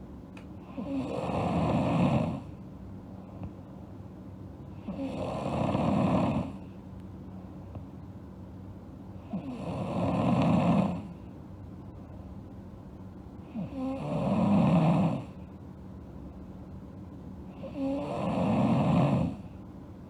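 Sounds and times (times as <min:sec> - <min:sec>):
girl snoring: 0:00.7 - 0:02.5, 0:04.8 - 0:06.6, 0:09.3 - 0:11.1, 0:13.6 - 0:15.4, 0:17.6 - 0:19.5.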